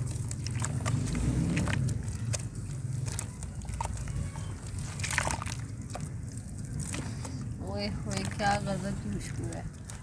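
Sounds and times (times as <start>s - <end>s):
wet clay crackling: 0.0s - 10.0s.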